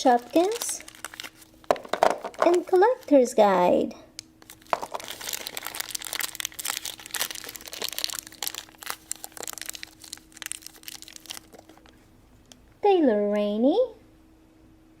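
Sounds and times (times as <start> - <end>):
crinkly wrapper crackling: 0.0 - 3.2, 4.2 - 12.0.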